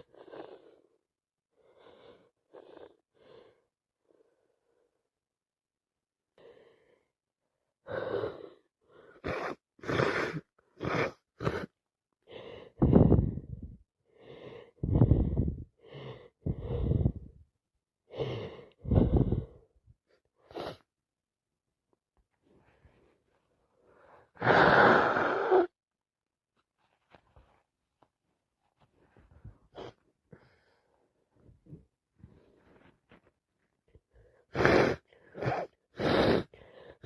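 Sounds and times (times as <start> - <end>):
person sniffling congested nose: 9.1 - 11.8, 20.4 - 20.9, 24.4 - 25.7, 34.4 - 37.0.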